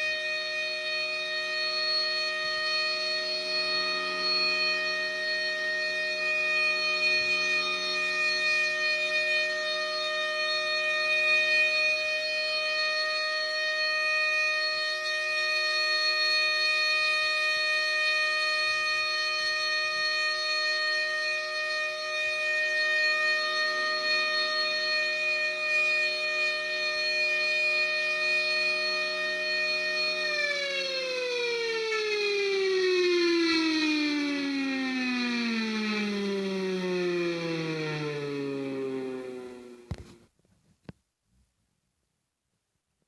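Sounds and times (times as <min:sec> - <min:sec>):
outdoor warning siren steady tone: 0:00.0 - 0:40.4.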